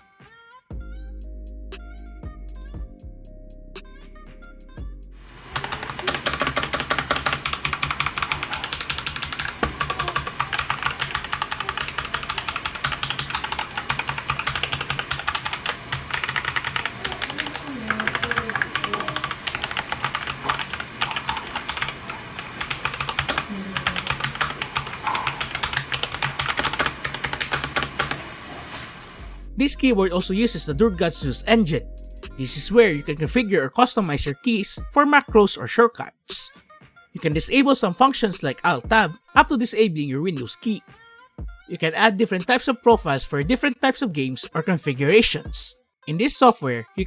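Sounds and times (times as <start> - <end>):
fast mechanical keyboard typing: 5.4 - 28.4.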